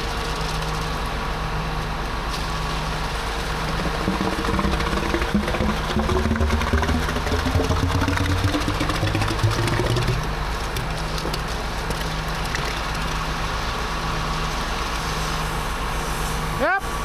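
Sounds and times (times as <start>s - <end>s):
truck diesel engine running: 3.4s - 11.1s.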